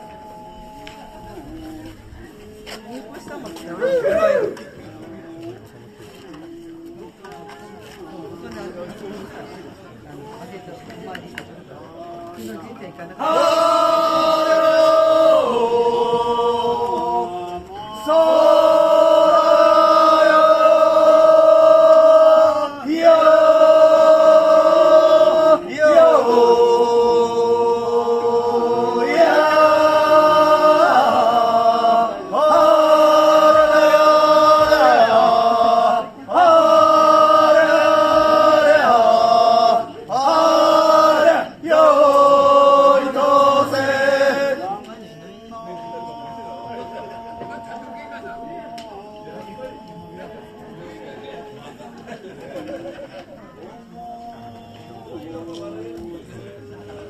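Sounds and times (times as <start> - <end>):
group of voices chanting: 12.1 - 44.9.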